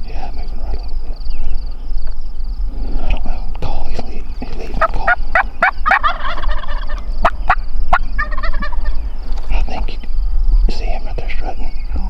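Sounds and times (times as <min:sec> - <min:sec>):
turkey gobbling: 0:04.0 - 0:10.1
short sharp turkey calls: 0:04.3 - 0:10.1.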